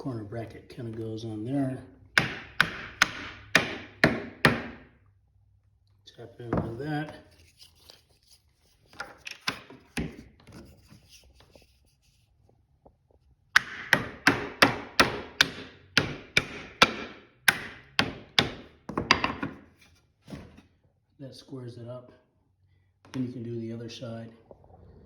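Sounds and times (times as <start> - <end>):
hammer tapping on wood: 2.2 - 4.8, 13.6 - 19.6.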